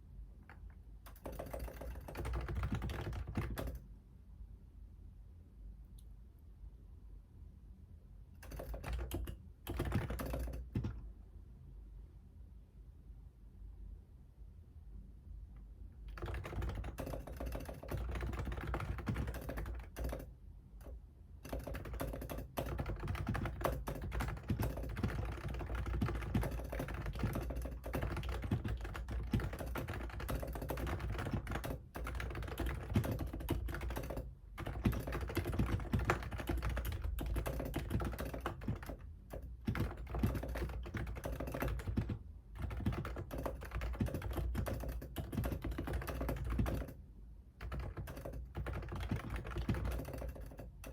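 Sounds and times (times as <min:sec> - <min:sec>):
fast typing on keyboard: 0:01.1 - 0:03.8, 0:08.4 - 0:11.0, 0:16.1 - 0:47.0, 0:47.6 - 0:50.9.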